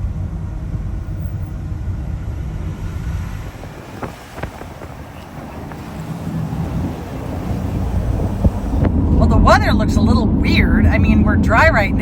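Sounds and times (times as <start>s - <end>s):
road and engine rumble: 0.0s - 12.0s.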